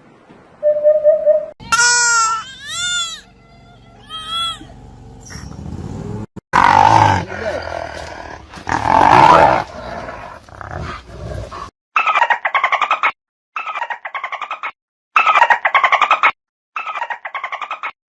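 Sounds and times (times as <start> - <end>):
animal roaring call: 6.6 - 11.7.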